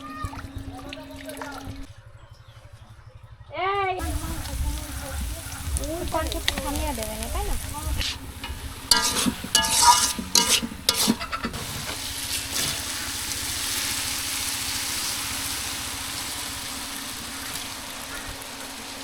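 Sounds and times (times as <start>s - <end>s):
food sizzling in hot oil: 4.0s - 19.0s
utensil scraping metal pan: 5.5s - 13.8s.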